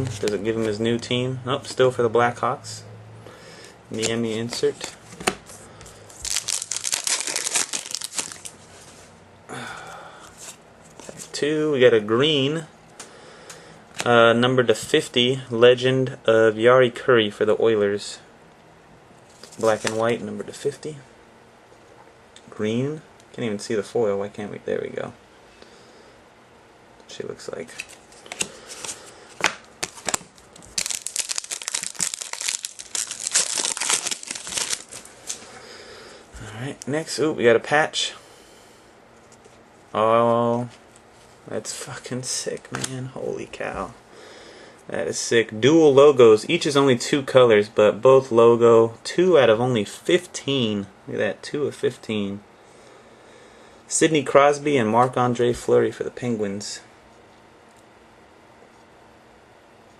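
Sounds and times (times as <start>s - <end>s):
foil wrapper crinkling: 6.1s - 8.6s, 29.8s - 35.5s.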